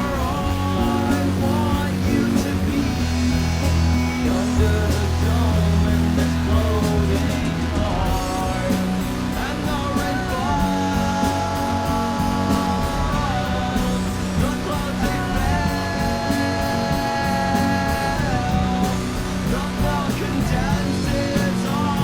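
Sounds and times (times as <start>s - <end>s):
rock song: 0.0s - 22.0s.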